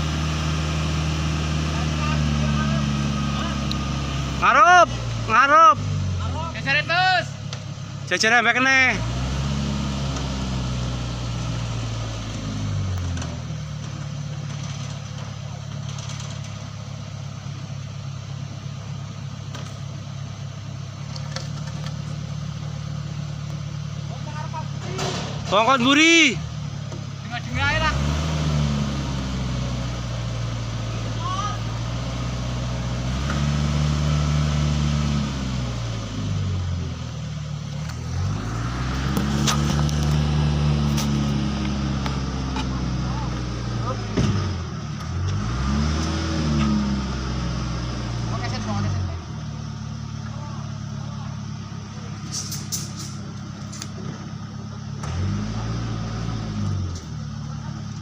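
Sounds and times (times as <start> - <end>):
crane engine idling: 13.0 - 24.9, 47.5 - 55.0
crane engine running: 28.0 - 58.0.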